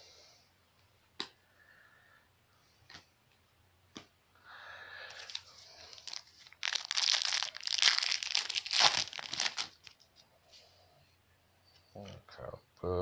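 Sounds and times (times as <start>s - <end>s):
card pack wrapper tearing and crinkling: 5.1s - 10.0s.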